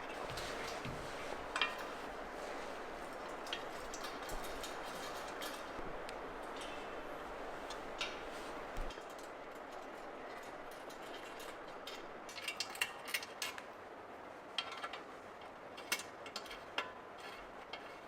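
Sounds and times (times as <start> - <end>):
steady low hiss: 0.0 - 17.7.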